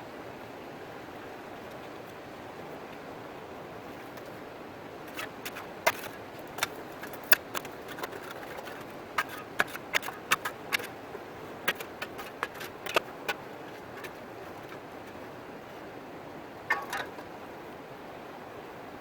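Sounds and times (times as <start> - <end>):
river water rushing: 0.4 - 19.0
sharp irregular clicks and knocks: 5.1 - 10.9.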